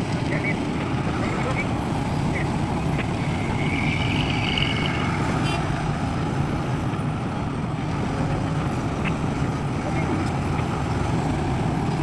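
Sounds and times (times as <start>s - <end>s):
vehicle engine rumble: 0.0s - 12.0s
thin high whine: 3.0s - 5.4s.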